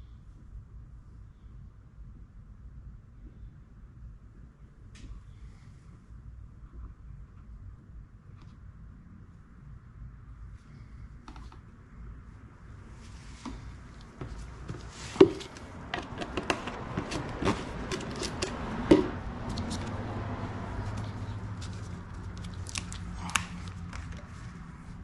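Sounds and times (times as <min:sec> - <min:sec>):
low steady hum: 0:00.0 - 0:25.0
plastic bottles clicking and knocking: 0:14.2 - 0:19.9.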